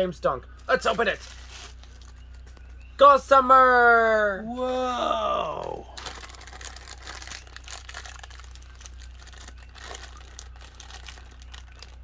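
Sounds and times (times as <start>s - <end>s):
steady low hum: 0.0s - 12.0s
plastic packaging crinkling: 0.9s - 2.6s, 5.9s - 12.0s.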